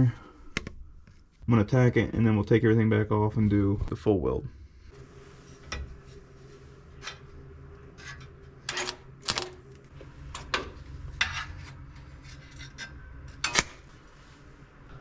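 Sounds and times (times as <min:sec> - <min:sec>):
steady low hum: 0:00.0 - 0:15.0
welder tack-welding bursts: 0:08.7 - 0:09.7.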